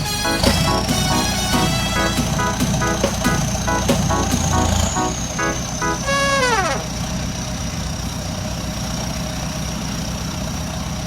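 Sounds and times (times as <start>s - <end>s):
music note with falling glide: 0.0s - 7.0s
engine idling: 0.0s - 11.0s.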